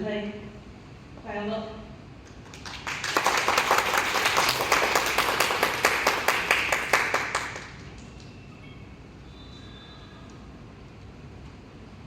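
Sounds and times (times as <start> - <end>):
audience applauding: 2.4 - 8.0.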